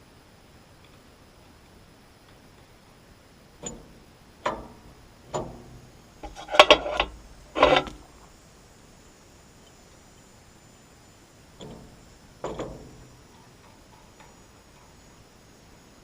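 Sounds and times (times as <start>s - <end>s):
steel parts clinking and knocking: 3.6s - 8.3s, 11.6s - 15.7s
metal parts rattling: 6.2s - 8.3s.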